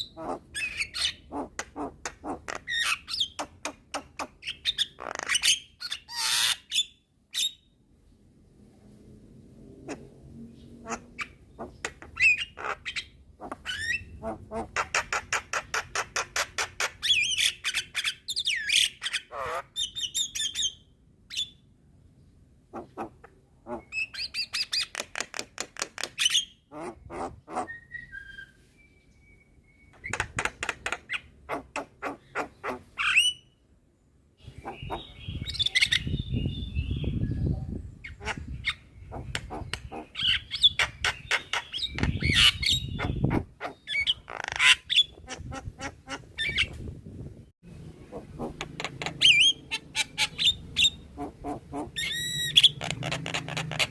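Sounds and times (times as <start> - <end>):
bird squawks: 10.8 - 20.7, 48.1 - 53.9
myna rattling calls: 34.5 - 36.2, 48.1 - 53.9.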